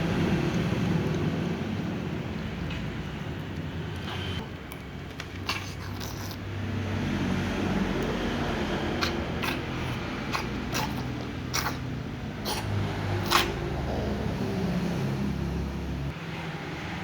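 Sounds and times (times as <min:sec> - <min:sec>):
cat crunching food: 0:03.3 - 0:06.4.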